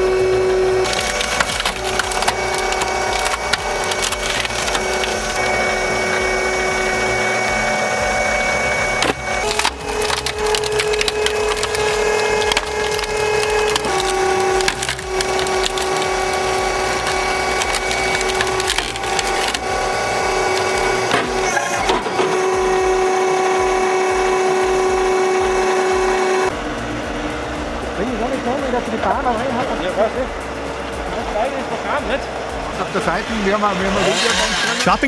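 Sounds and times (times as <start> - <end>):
wood-processing machine whine: 0.0 - 35.0
wood cracking and splintering: 0.8 - 5.6, 8.6 - 22.8.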